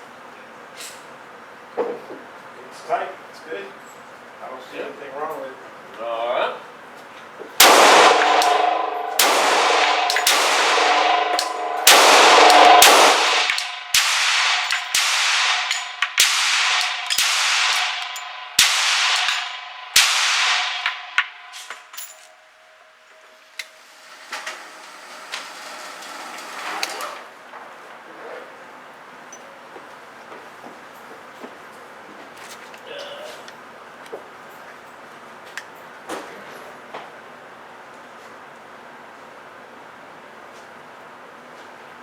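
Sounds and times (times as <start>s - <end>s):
pistol shots with ringing echo: 7.6s - 21.6s.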